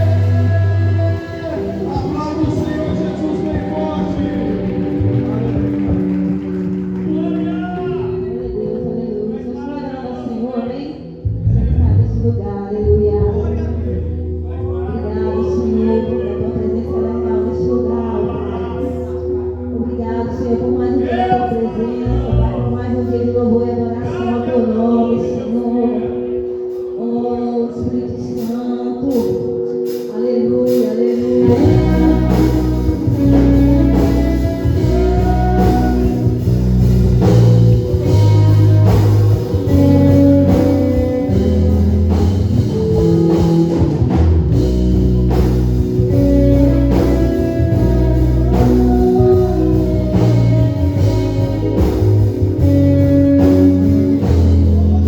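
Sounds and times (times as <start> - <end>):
person singing: 0.0 - 6.4, 23.2 - 44.6, 45.2 - 55.0
bass and drums: 0.0 - 8.7, 30.7 - 55.0
worship band playing: 0.0 - 11.6, 12.7 - 55.0.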